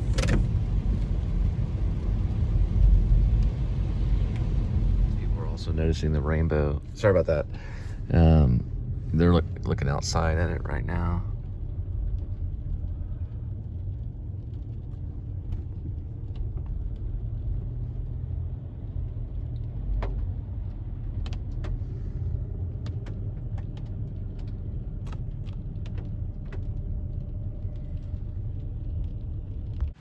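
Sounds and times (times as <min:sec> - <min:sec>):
car road and engine noise: 0:00.0 - 0:30.0
light clicks and taps: 0:19.3 - 0:28.2.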